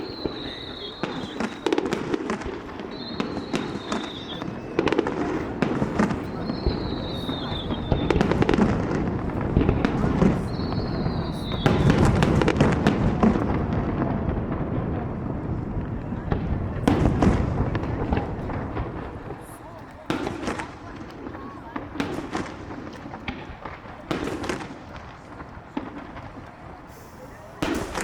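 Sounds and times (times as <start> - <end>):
firework high whistle: 0.0 - 2.2, 2.8 - 5.0, 6.0 - 8.4, 10.1 - 12.5
crowd voices: 0.0 - 28.0
fireworks bangs and crackling: 0.0 - 28.0.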